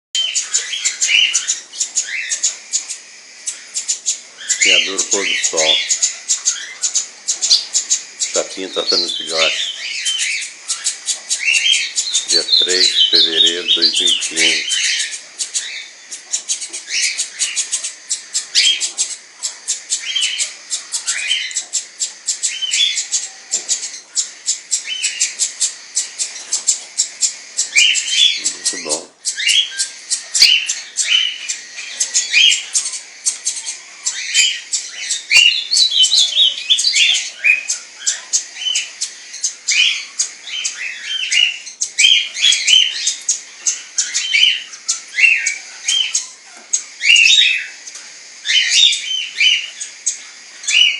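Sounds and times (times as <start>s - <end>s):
parrots chirping: 0.2s - 50.9s.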